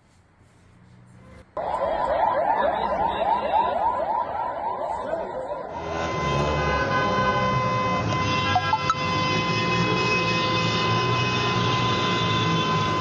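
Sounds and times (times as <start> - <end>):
street traffic rumble: 0.0 - 13.0
emergency vehicle sirens: 1.6 - 13.0
vehicle horns: 5.7 - 13.0.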